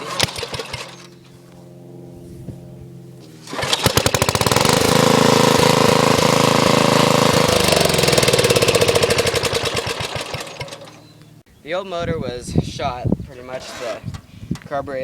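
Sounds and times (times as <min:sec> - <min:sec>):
rope pull-start: 0:00.0 - 0:01.1, 0:03.4 - 0:11.1
lawn tractor engine running: 0:00.0 - 0:11.4.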